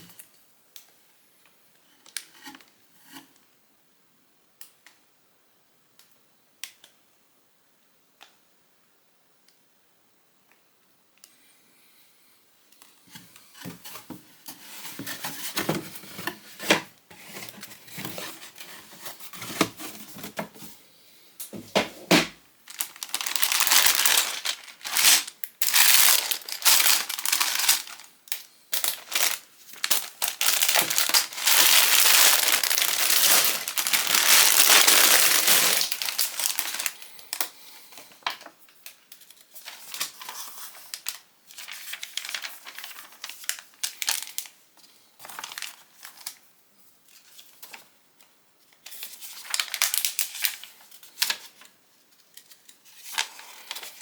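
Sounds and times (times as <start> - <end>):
plastic bag crinkling: 22.6 - 37.5, 38.9 - 44.6, 45.2 - 46.4, 49.0 - 51.6.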